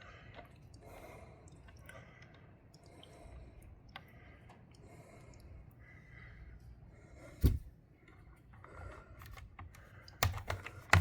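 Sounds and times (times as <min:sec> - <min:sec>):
plastic clicks and knocks: 0:09.2 - 0:11.0.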